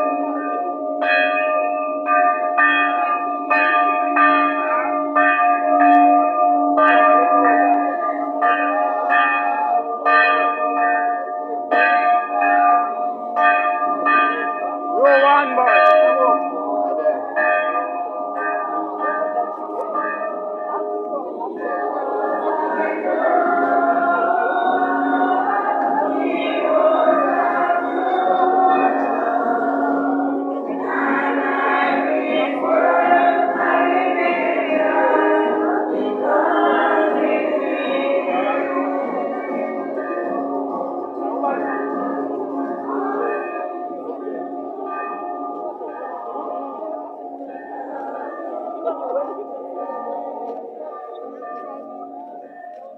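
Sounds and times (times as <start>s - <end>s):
church bells ringing: 0.0s - 52.9s
music with voices singing: 18.8s - 52.9s.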